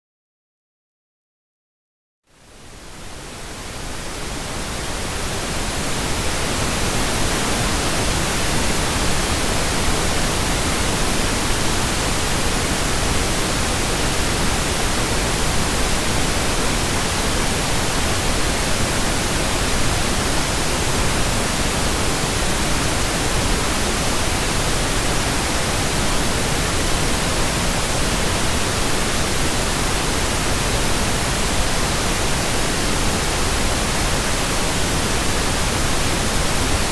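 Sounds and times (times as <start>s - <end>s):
pink noise hiss: 2.3s - 36.9s.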